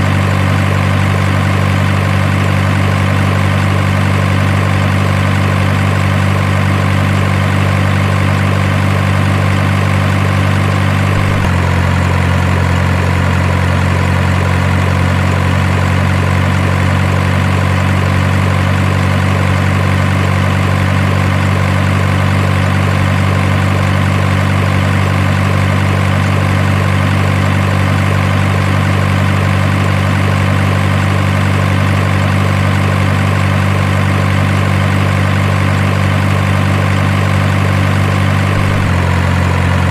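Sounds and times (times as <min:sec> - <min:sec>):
heavy truck engine idling: 0:00.0 - 0:39.9.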